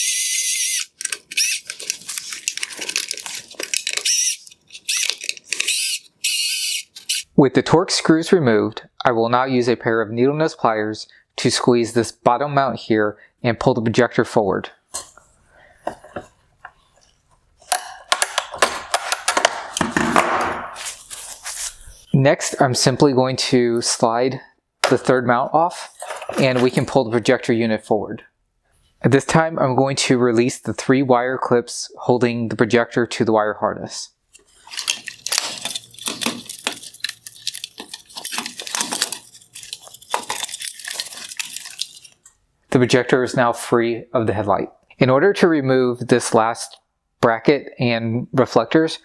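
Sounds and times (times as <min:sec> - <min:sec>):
plastic scraping: 0:00.0 - 0:07.2, 0:34.4 - 0:42.2
wires rustling: 0:00.0 - 0:07.2, 0:34.4 - 0:42.3.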